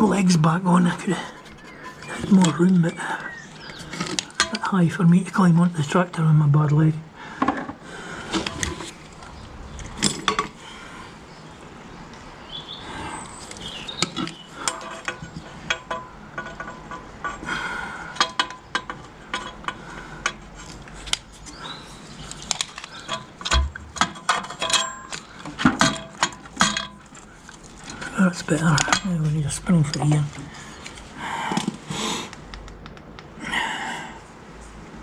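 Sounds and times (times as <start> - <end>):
metal tools clinking: 22.3 - 31.0.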